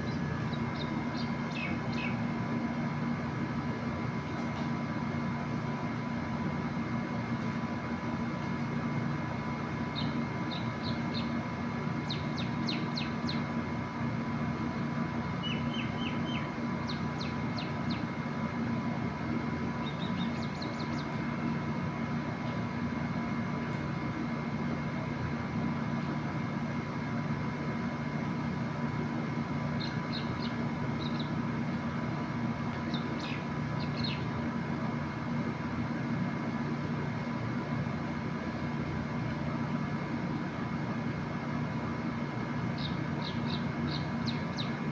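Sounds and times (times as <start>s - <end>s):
small birds chirping: 0.0s - 2.3s, 9.9s - 11.4s, 12.0s - 13.5s, 15.4s - 18.2s, 19.8s - 21.2s, 29.7s - 31.4s, 32.8s - 34.4s, 42.7s - 44.8s
steady mechanical hum: 0.0s - 44.9s.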